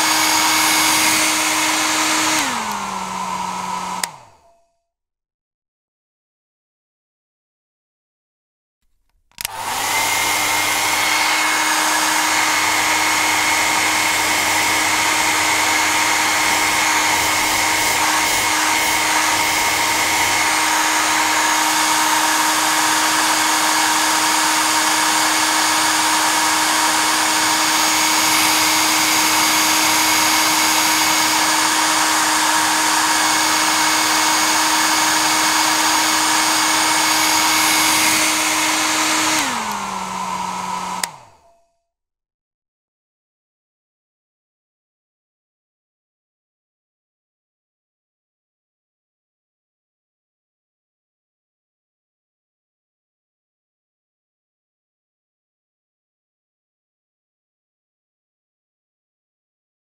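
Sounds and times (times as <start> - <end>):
hair dryer running: 0.0 - 4.6, 9.3 - 41.6.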